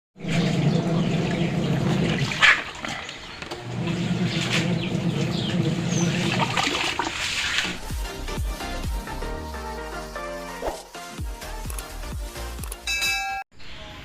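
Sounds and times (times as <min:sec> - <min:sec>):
motor hum: 0:00.2 - 0:07.8
water churning in washing machine: 0:00.2 - 0:07.9.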